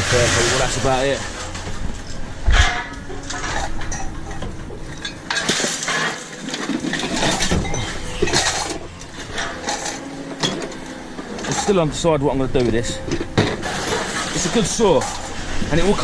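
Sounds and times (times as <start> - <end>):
scrap metal clinking: 0.0 - 16.0.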